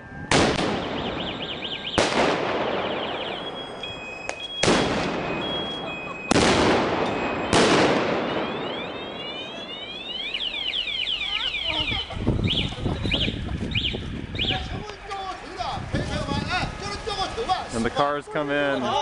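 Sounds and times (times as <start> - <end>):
car alarm warbling: 0.0 - 14.8
fireworks blasts with crackle: 0.2 - 18.0.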